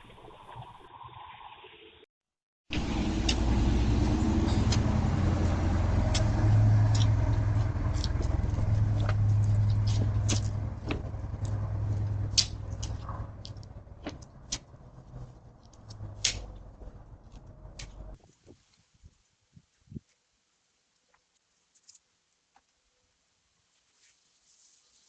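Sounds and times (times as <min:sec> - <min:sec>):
vehicle engine humming: 0:02.7 - 0:18.2.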